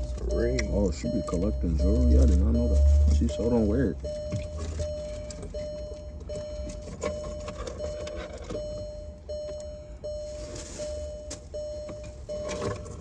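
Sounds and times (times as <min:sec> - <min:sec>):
car warning chime beeping: 0:00.0 - 0:13.0
low steady rumble: 0:00.0 - 0:13.0.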